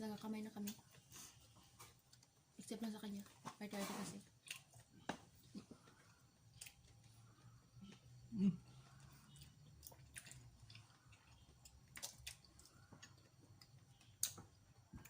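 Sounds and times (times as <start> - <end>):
faint low hum: 0.0 - 15.0
chewing clicks and smacks: 4.4 - 5.2, 5.8 - 7.2, 8.9 - 15.0.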